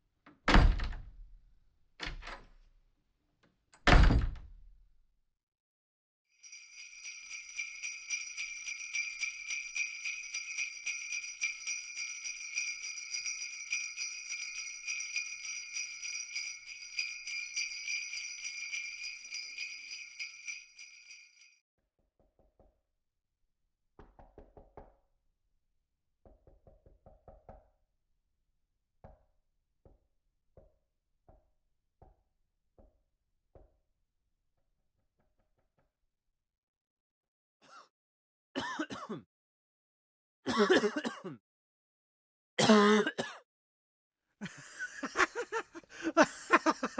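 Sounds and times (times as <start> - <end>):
sleigh bells shaking: 6.4 - 21.6.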